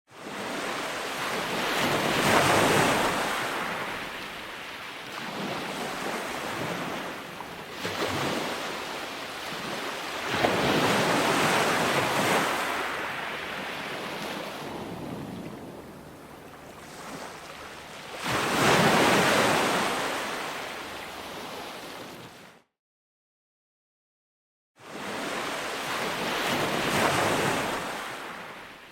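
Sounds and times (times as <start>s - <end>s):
ocean waves breaking: 0.1s - 22.6s, 24.8s - 28.9s
wind noise on microphone: 13.5s - 17.4s.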